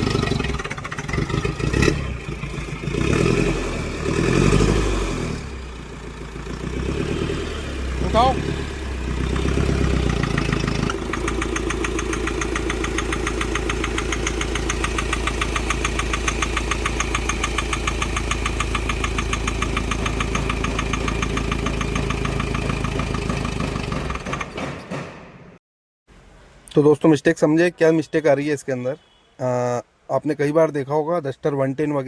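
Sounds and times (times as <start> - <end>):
diesel engine knocking tick: 9.3 - 24.6.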